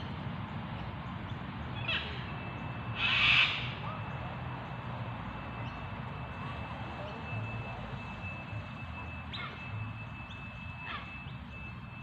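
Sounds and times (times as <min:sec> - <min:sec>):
bird harsh call: 0:03.0 - 0:03.8.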